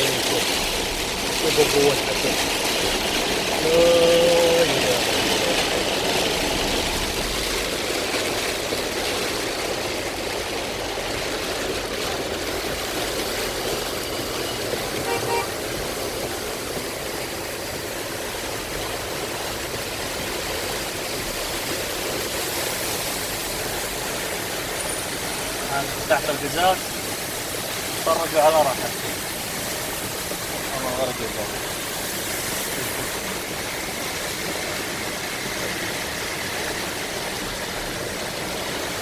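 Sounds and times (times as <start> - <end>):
heavy rain on a car: 0.0 - 39.0
car horn toot: 15.0 - 15.6.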